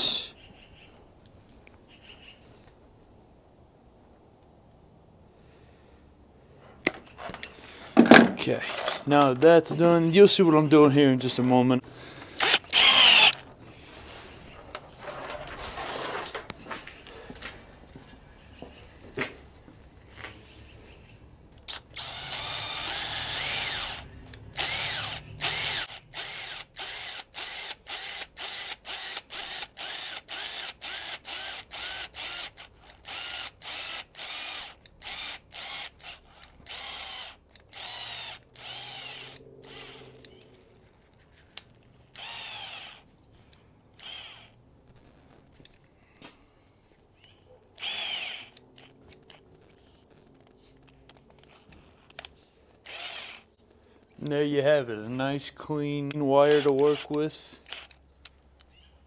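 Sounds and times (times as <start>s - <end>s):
power drill spinning: 7.0s - 19.2s, 20.0s - 45.9s, 46.9s - 54.3s, 56.4s - 58.4s.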